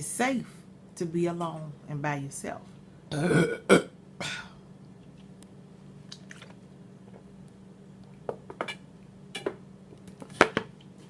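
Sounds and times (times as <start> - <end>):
steady low hum: 0.0 - 11.0
wet chewing sounds: 6.0 - 6.7.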